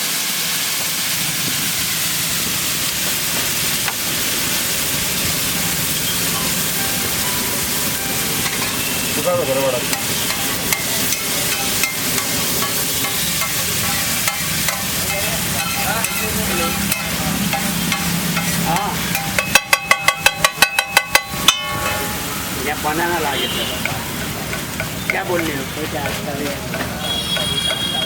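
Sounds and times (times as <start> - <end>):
eggs sizzling in a pan: 0.0 - 28.0.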